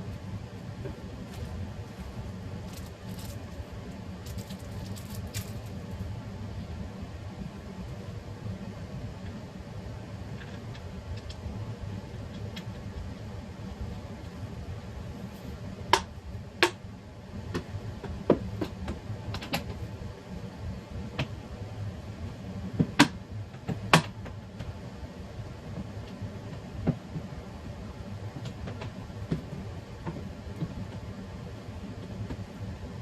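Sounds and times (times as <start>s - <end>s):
low background noise: 0.0s - 33.0s.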